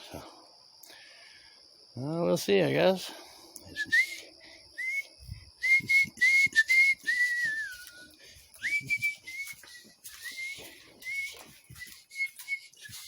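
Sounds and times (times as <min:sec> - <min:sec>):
person whistling: 0:03.7 - 0:13.0.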